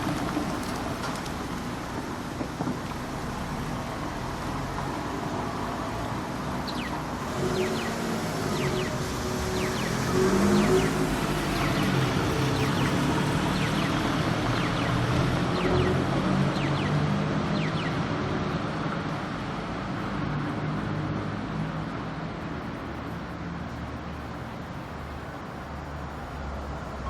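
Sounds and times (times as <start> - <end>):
street traffic engines: 0.0 - 27.0
crossing signal chirping beeps: 6.6 - 18.1.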